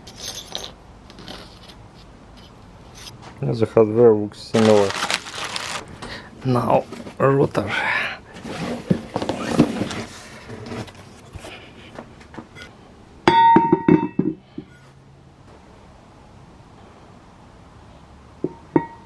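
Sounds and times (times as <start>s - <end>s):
handling noise: 4.5s - 6.2s
ringing metallic clanks: 13.3s - 14.4s, 18.5s - 19.0s.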